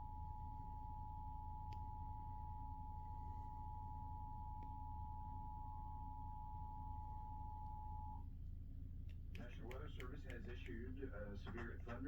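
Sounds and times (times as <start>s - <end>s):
two-tone alarm signal: 0.0s - 8.2s
low hum: 0.0s - 9.4s.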